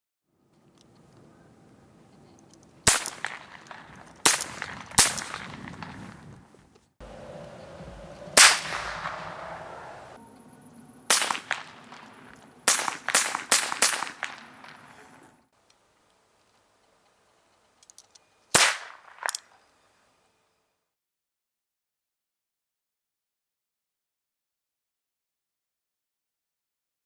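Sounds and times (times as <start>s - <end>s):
blank revolver shots: 2.7s - 6.2s, 8.3s - 10.2s, 10.9s - 15.3s, 18.5s - 19.5s.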